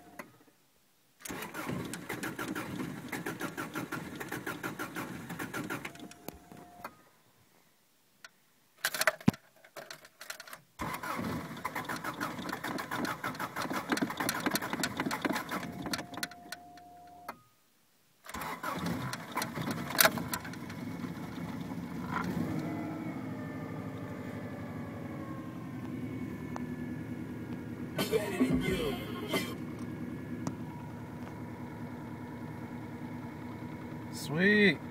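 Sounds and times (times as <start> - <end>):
starter motor cranking engine: 1.2 - 6.2, 10.8 - 16.2, 18.3 - 21.4
car engine idling: 19.0 - 34.9.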